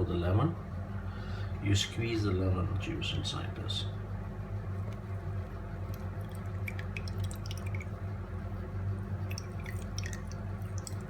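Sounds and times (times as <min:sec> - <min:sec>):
steady low hum: 0:00.0 - 0:11.0
lemon juice dripping: 0:05.8 - 0:08.1, 0:09.1 - 0:11.0.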